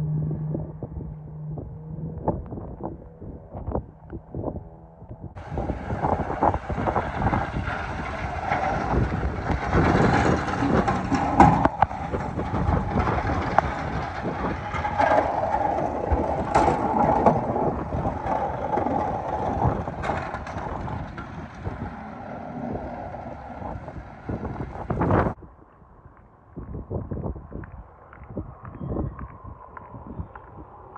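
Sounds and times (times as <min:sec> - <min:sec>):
heavy vehicle driving past: 0:05.4 - 0:25.4.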